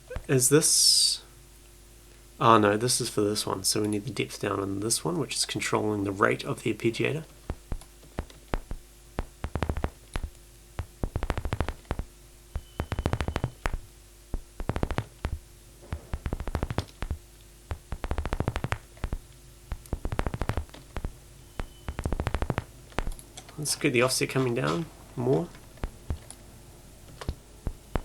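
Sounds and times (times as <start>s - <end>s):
faint steady hum: 0.0s - 28.0s
synthesized sharp clicks: 7.4s - 23.6s, 27.1s - 28.0s.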